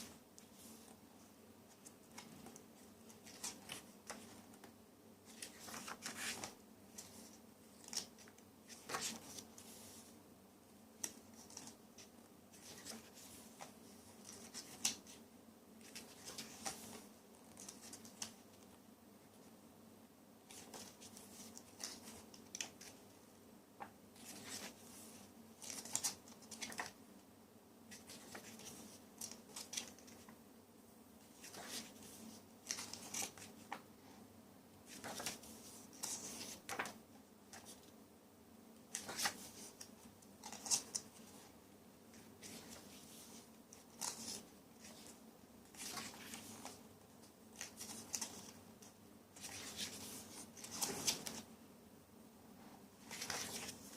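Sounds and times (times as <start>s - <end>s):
pages turning: 1.7s - 4.6s, 5.2s - 10.0s, 11.0s - 15.2s, 15.8s - 18.5s, 20.5s - 23.0s, 23.8s - 27.0s, 27.9s - 30.3s, 31.3s - 33.9s, 34.9s - 37.9s, 38.9s - 41.4s, 42.1s - 46.8s, 47.5s - 51.5s, 53.0s - 53.9s.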